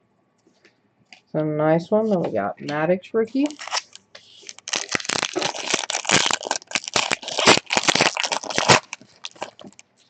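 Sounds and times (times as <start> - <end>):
foil wrapper tearing and crinkling: 3.4 - 9.8.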